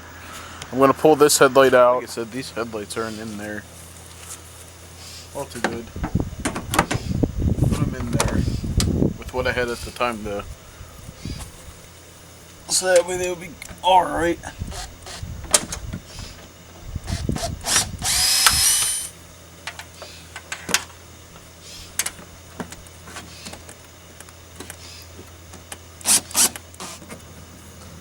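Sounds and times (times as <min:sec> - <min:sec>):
steady low hum: 0:00.0 - 0:28.0
power drill running: 0:14.7 - 0:15.2, 0:17.1 - 0:19.2, 0:26.0 - 0:27.0.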